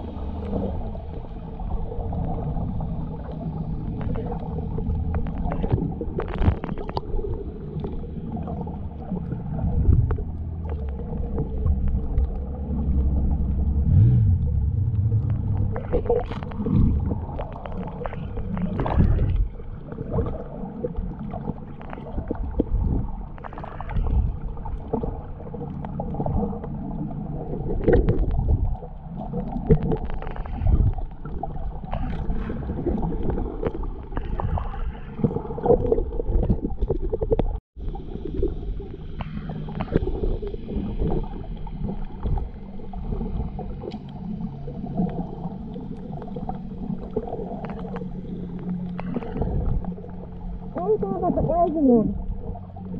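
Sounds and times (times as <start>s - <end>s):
bubbling splashes: 0.0s - 52.9s
muffled underwater rumble and sloshing: 0.0s - 52.9s.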